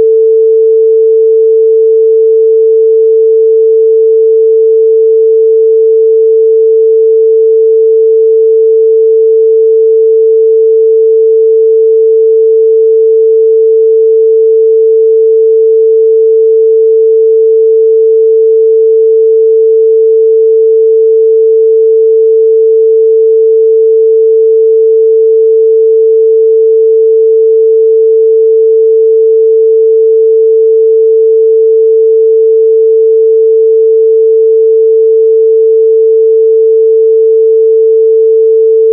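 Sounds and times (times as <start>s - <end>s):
sine-wave test tone: 0.0s - 38.9s.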